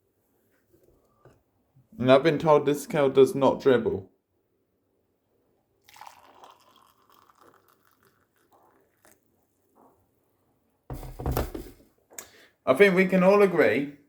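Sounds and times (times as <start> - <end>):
water pouring from kettle: 5.8 - 9.3.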